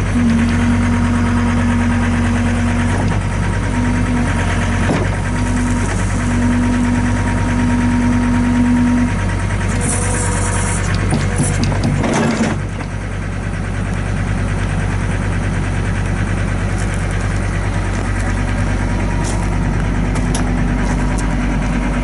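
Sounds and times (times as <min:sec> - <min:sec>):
whining tone: 0:00.0 - 0:12.8
diesel engine running: 0:00.0 - 0:22.0.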